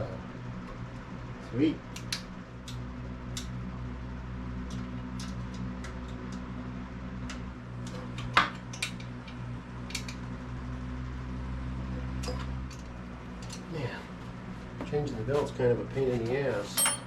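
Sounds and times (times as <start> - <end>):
steady low hum: 0.0 - 17.0
light metallic clicks and clinks: 16.7 - 17.0.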